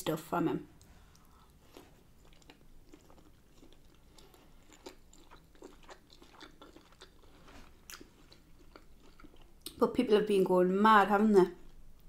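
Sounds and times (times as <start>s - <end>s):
person chewing food: 0.8s - 9.8s.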